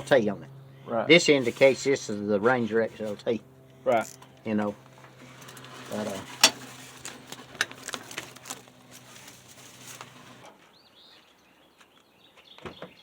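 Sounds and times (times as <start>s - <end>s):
steady low hum: 0.0s - 10.6s.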